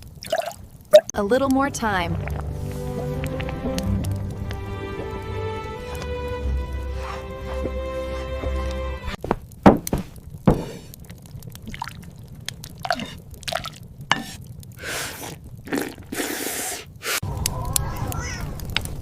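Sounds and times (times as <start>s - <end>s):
hissing pouring sounds: 0.0s - 1.1s, 1.9s - 7.8s, 10.4s - 19.0s
liquid drips and plops: 0.0s - 1.2s, 2.1s - 4.6s, 10.9s - 16.2s
music: 1.2s - 9.2s.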